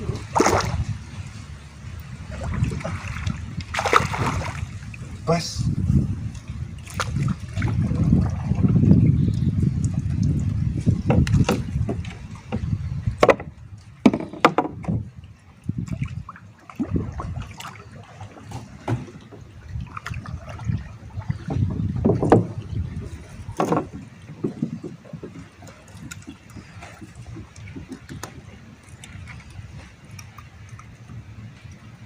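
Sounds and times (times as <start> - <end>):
water splashing and sloshing: 0.0 - 32.0
sharp knocks and clatters: 13.2 - 15.0.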